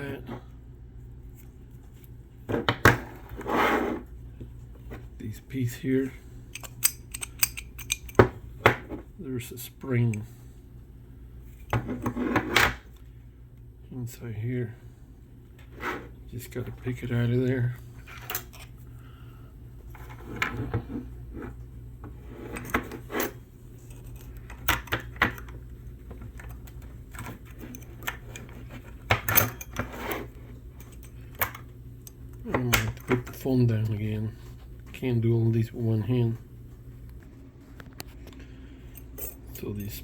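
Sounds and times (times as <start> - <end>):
steady low hum: 0.0 - 40.0
metal parts clinking and scraping: 6.5 - 8.2, 18.1 - 18.8, 27.1 - 31.6.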